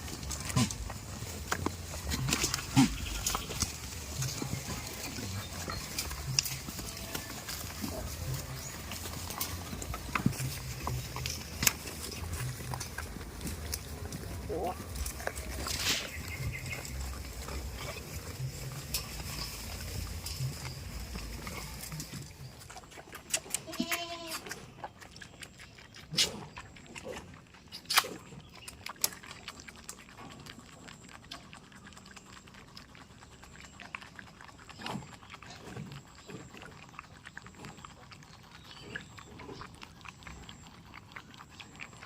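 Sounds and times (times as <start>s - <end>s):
rustling: 0.0s - 24.6s
goat bleating: 2.2s - 4.6s, 6.2s - 7.6s, 23.5s - 24.6s.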